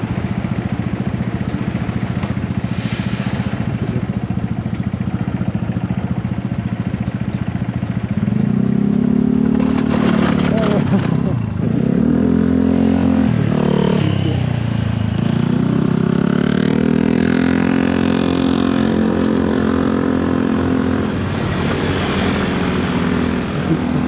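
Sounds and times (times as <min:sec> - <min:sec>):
motorcycle engine revving: 0:07.7 - 0:24.0.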